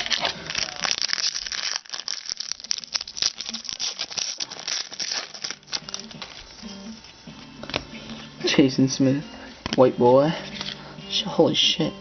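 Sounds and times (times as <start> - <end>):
card pack wrapper crinkling: 0.0 - 6.6.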